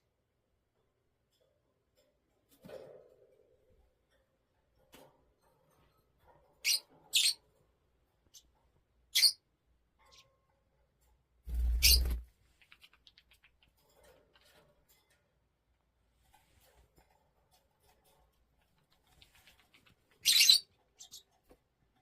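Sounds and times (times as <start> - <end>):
parrot squeaking: 9.1 - 9.4, 11.5 - 12.2, 20.2 - 21.2.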